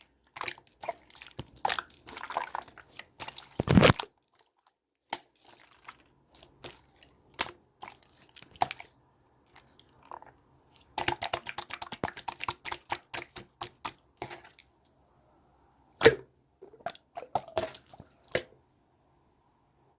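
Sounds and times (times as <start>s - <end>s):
slime squished by hand: 0.8s - 4.1s
slime popping: 3.6s - 4.0s.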